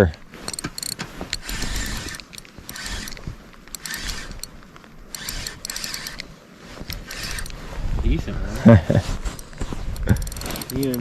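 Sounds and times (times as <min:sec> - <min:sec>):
fishing reel clicking and whirring: 0:00.5 - 0:07.6, 0:09.3 - 0:11.0.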